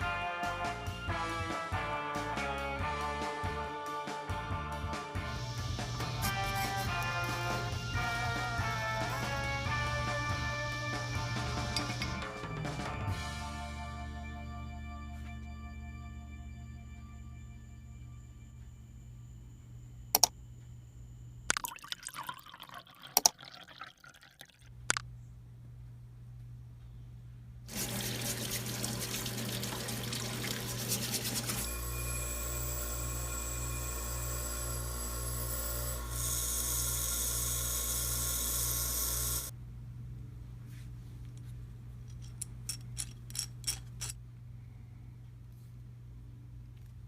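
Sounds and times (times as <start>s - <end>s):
water dripping and splashing: 27.7s - 31.6s
power tool running: 30.7s - 39.5s
metal clinks: 42.0s - 44.2s.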